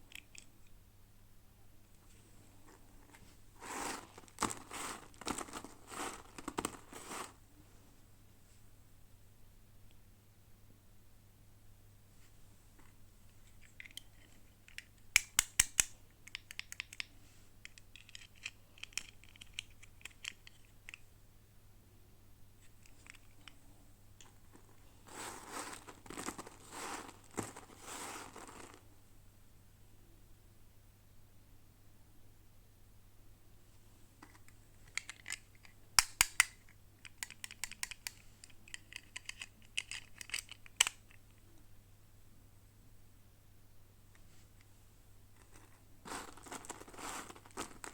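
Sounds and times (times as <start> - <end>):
toy packaging clicks and crackles: 3.8 - 7.4, 17.7 - 21.0, 34.8 - 41.1, 45.4 - 47.9
sharp plastic snaps: 14.7 - 17.1, 34.9 - 41.2.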